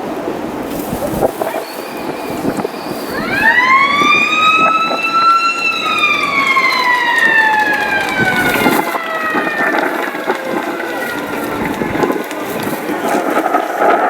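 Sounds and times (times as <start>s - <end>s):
gusty wind: 0.0s - 14.0s
motor siren winding: 1.8s - 10.8s.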